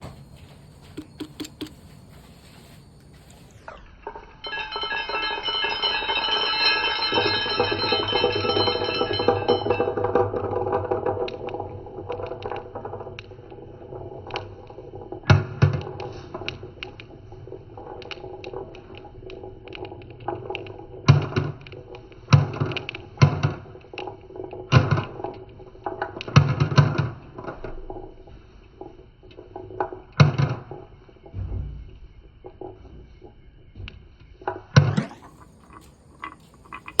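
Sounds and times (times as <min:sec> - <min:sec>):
marbles rolling on wooden track: 0:00.4 - 0:31.3, 0:34.4 - 0:37.0
marbles striking metallophone bars: 0:04.4 - 0:10.5, 0:34.9 - 0:37.0.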